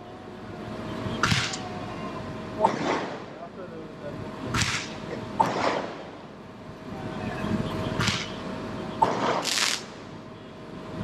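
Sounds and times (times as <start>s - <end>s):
firework cracks: 9.0s - 10.0s
firework hissing whooshes: 9.1s - 9.9s.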